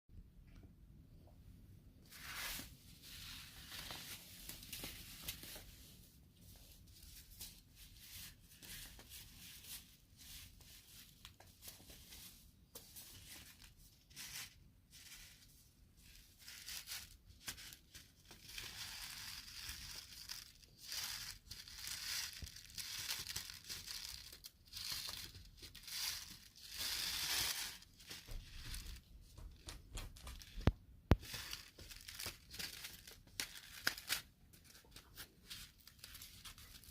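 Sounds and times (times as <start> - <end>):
paper packets crinkling: 16.5 - 29.0, 29.6 - 36.9.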